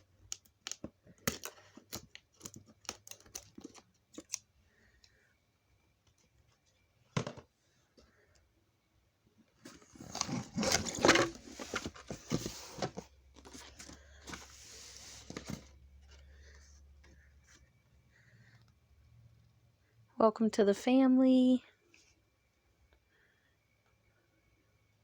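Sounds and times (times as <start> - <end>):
packaging tearing and crinkling: 0.3 - 4.4.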